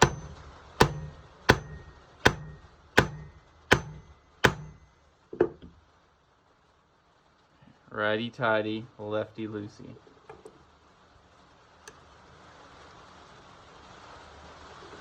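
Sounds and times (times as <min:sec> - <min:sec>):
hammer striking metal: 0:00.0 - 0:05.7.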